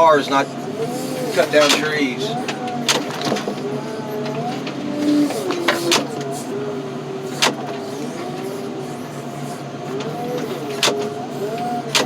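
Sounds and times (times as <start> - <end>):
heavy machine engine running: 0.0 - 12.0
wood cracking: 1.6 - 6.3.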